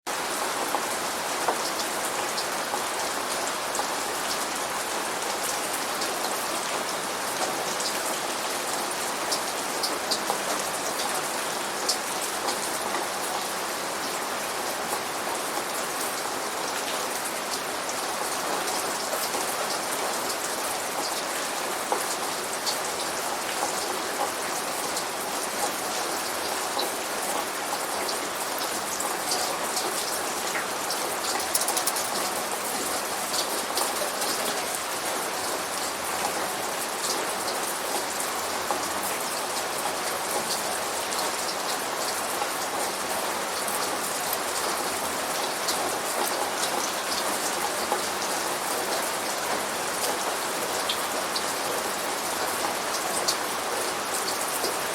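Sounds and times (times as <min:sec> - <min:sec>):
steady rain: 0:00.1 - 0:54.9
drops ticking on a surface: 0:31.3 - 0:32.3.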